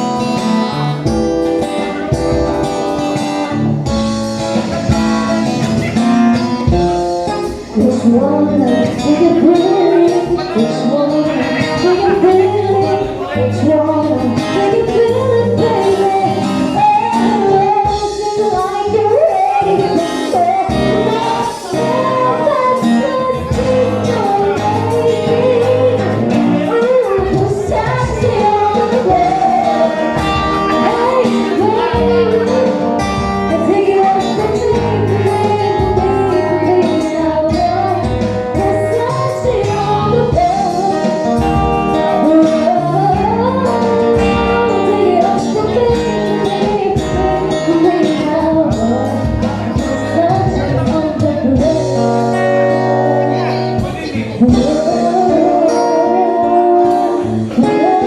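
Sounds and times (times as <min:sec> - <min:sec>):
band playing guitar and percussion: 0:00.0 - 0:58.0
person singing: 0:00.0 - 0:58.0.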